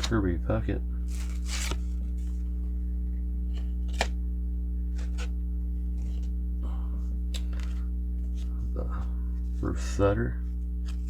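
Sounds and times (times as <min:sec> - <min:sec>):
cards sliding and rustling: 0:00.0 - 0:00.2, 0:01.0 - 0:02.6, 0:03.4 - 0:04.2, 0:04.9 - 0:06.4, 0:07.3 - 0:08.6, 0:10.8 - 0:11.0
low electrical hum: 0:00.0 - 0:11.0
sharp card clicks: 0:03.6 - 0:04.2.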